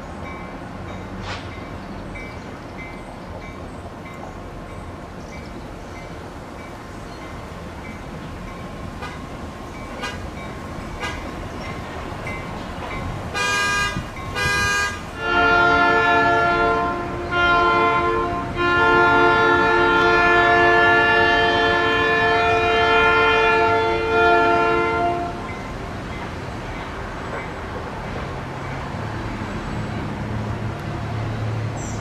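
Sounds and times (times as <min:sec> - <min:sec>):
train rumble: 0:00.0 - 0:32.0
locomotive air horn: 0:10.0 - 0:10.3, 0:11.0 - 0:11.3, 0:13.3 - 0:25.4.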